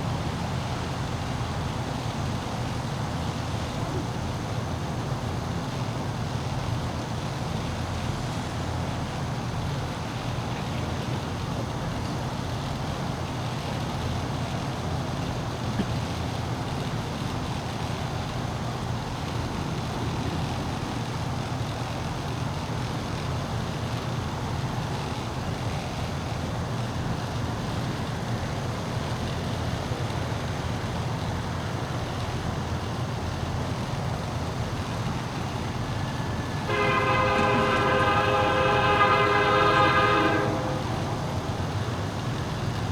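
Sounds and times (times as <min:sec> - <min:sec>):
locomotive horn blowing: 0:36.4 - 0:42.9.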